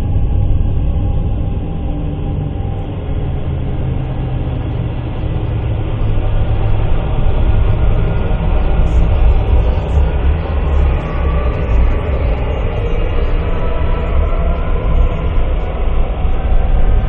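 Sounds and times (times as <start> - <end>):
low rumbling synthesizer drone: 0.0 - 17.0.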